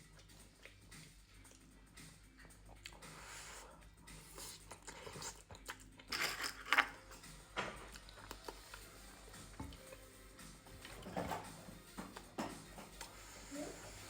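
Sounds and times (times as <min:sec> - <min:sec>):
person chewing noodles: 0:00.0 - 0:11.0.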